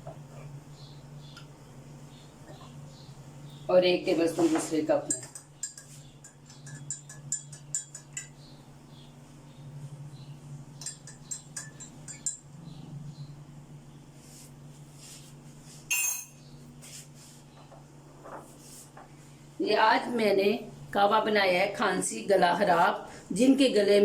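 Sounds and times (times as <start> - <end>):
steady low hum: 0.0 - 24.0
spoon clinking against cup: 5.1 - 8.4, 10.8 - 12.4, 15.9 - 16.4.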